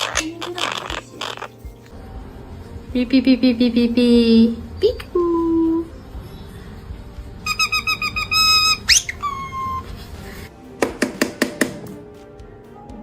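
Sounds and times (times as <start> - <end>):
parrot mimicking electronic beeps: 7.4 - 9.9.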